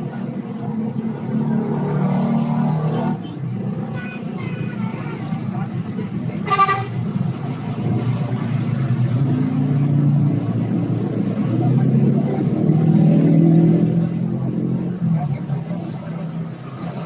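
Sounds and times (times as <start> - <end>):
diesel bus engine accelerating: 4.7 - 17.0.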